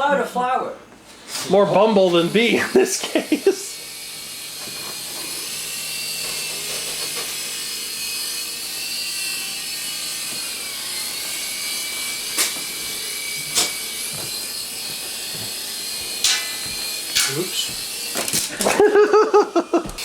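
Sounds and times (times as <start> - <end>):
toy helicopters whirring: 2.3 - 20.0
sharp knocks: 16.2 - 18.7.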